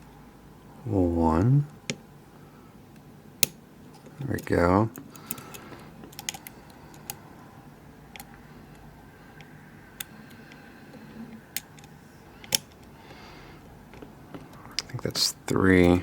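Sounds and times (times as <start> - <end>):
lock pick clicking pins: 3.4 - 7.2, 11.5 - 12.9.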